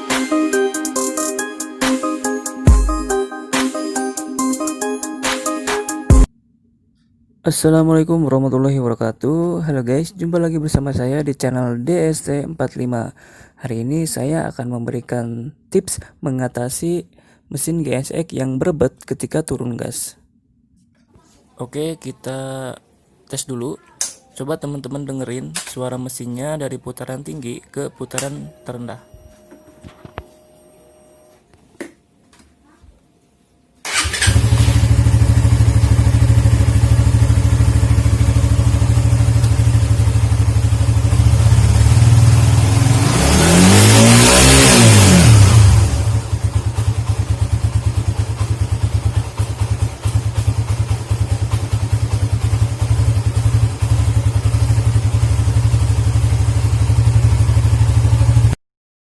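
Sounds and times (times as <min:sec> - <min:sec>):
motorcycle engine revving: 0:33.9 - 0:58.6
motorcycle engine starting and idling: 0:33.9 - 0:58.6.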